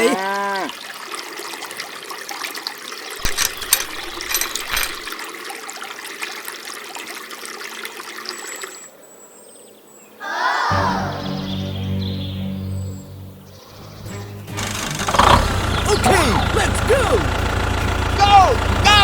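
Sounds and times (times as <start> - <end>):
water pouring and trickling: 0.2 - 8.9.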